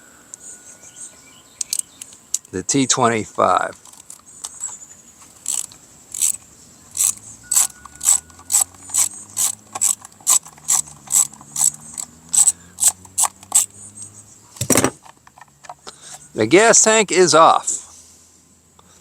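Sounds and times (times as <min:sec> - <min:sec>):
ratcheting driver clicking: 0:05.3 - 0:13.8.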